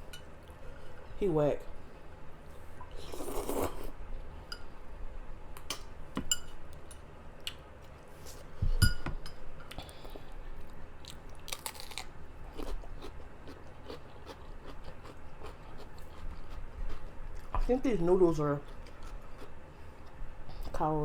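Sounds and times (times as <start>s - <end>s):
chewing and biting food: 10.6s - 17.7s, 18.6s - 20.8s.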